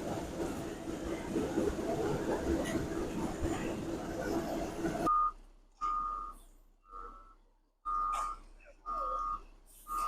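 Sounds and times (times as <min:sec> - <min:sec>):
truck reversing alarm beeps: 0:05.1 - 0:10.0.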